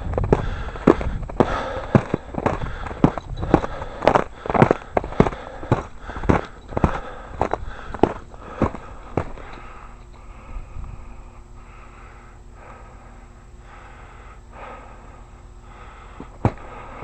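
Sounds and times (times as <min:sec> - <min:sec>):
footsteps crunching on icy snow: 0:00.0 - 0:09.9
faint low hum: 0:00.0 - 0:17.0.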